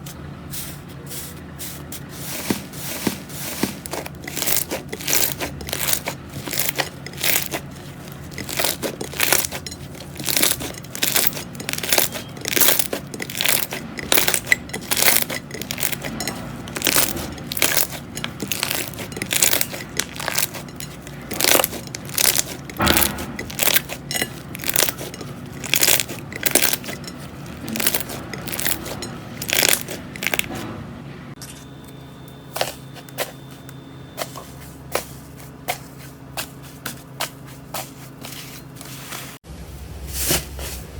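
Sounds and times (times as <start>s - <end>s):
slime squishing and popping: 3.9s - 26.9s, 27.6s - 30.6s.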